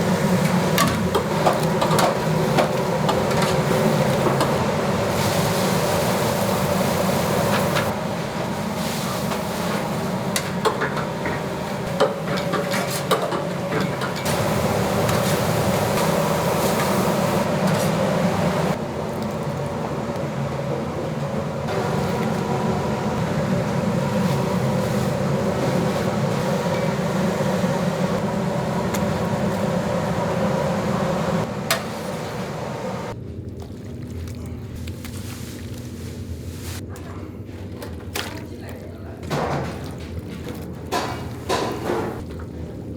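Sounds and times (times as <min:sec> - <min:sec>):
machinery and ventilation hum: 0:00.0 - 0:42.9
utensils and dishes clinking: 0:09.2 - 0:14.5, 0:39.2 - 0:42.2.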